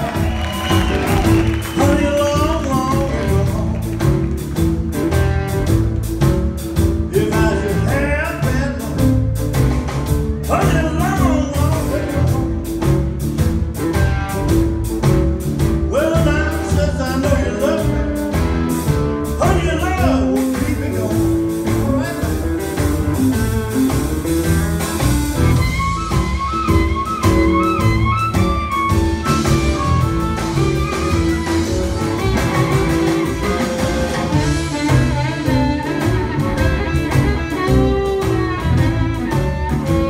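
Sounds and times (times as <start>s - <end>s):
bass: 0.0s - 40.0s
blues band playing: 0.0s - 40.0s
steady drum beat: 0.0s - 40.0s
bending lead line: 9.2s - 40.0s.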